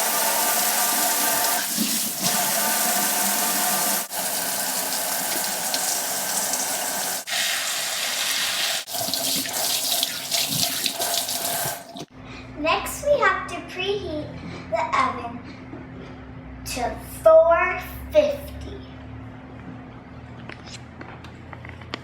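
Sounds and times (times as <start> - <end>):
tap water running into sink: 0.0 - 12.1.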